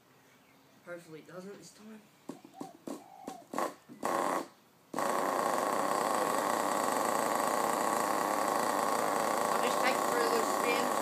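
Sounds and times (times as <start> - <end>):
small engine idling high: 4.0 - 11.0
pull-start cord whirring: 5.0 - 11.0.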